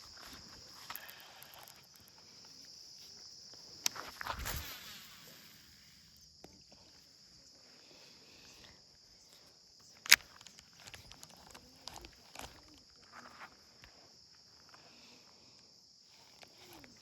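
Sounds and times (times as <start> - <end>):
light clicks and rustles: 0.0 - 4.8, 8.4 - 14.9, 15.5 - 17.0
crickets and insects chirping: 0.0 - 17.0
sharp click: 10.0 - 12.7.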